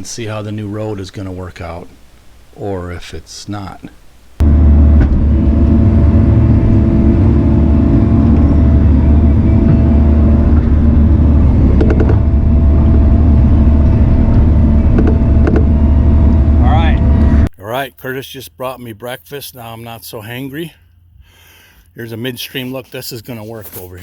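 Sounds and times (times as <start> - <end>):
diesel engine running: 4.4 - 17.5.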